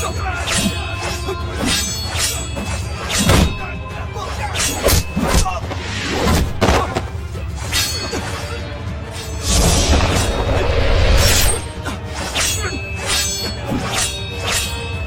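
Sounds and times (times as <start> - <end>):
dramatic background music: 0.0 - 15.0.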